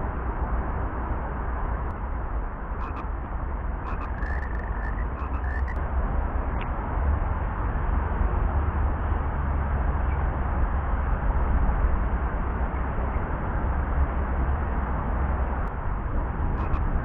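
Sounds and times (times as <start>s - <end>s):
low rumble and hiss: 0.0s - 17.0s
frog croaking: 2.8s - 3.1s, 3.8s - 5.8s, 16.6s - 16.8s.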